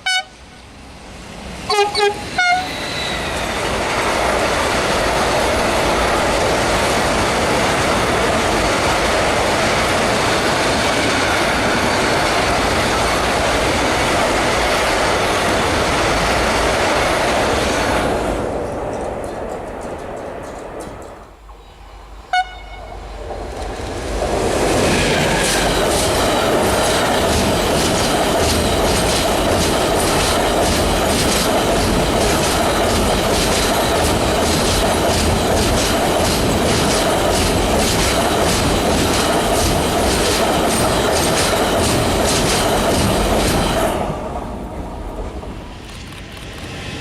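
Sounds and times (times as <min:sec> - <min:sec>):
train horn blast: 0:00.0 - 0:00.6, 0:01.7 - 0:02.8, 0:22.3 - 0:23.0
freight train wagons rumbling: 0:00.1 - 0:47.0
wheels clickety-clack over rail joints: 0:01.7 - 0:21.6, 0:23.1 - 0:47.0.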